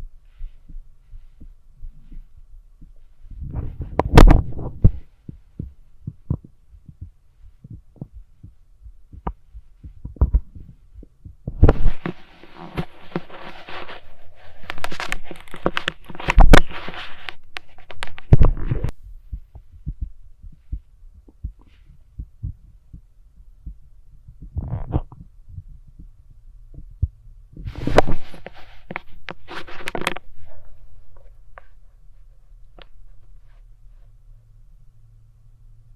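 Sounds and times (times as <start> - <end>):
heartbeat through stethoscope: 0.0 - 12.3, 18.3 - 28.4.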